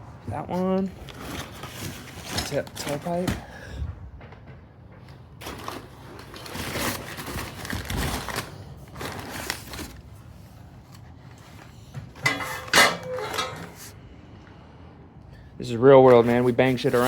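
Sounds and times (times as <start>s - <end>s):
metal pipes scraping: 12.2s - 14.0s.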